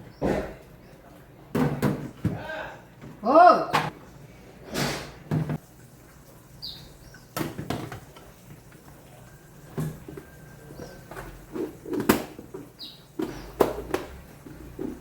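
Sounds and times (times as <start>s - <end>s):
knocks and clunks of objects: 1.5s - 2.4s, 5.3s - 5.6s, 7.4s - 8.3s, 11.1s - 15.0s.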